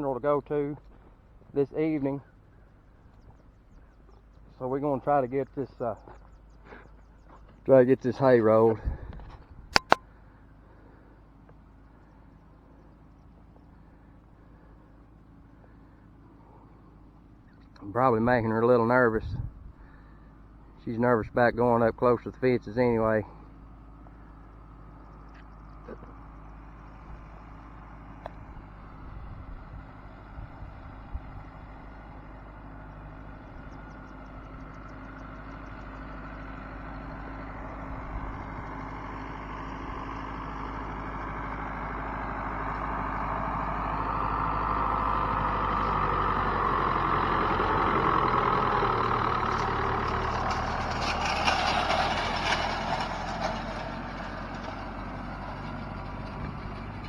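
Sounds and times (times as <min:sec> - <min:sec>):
tractor engine running: 0:00.0 - 0:57.0
hay rake rattling clatter: 0:49.2 - 0:57.0.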